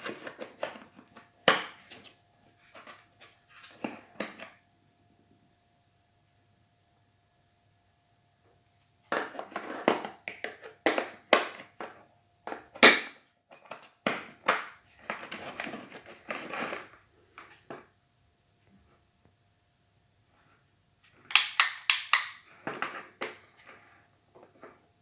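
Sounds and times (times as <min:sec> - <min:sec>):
rustling and crackling handling: 0:13.5 - 0:19.4.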